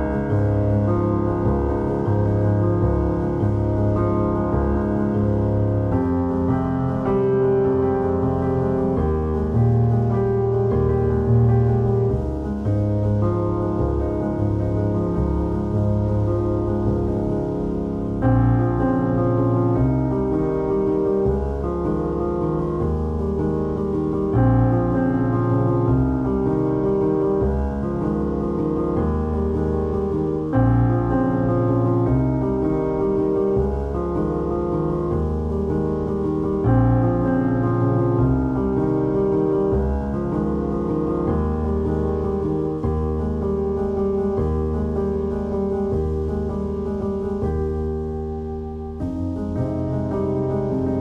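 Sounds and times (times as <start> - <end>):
low bass: 0.0 - 51.0
slow piano chords: 0.0 - 51.0.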